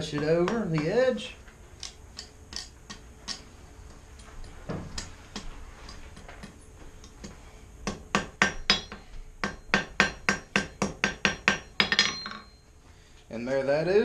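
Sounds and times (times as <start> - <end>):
hammer ringing on anvil: 7.9 - 12.6.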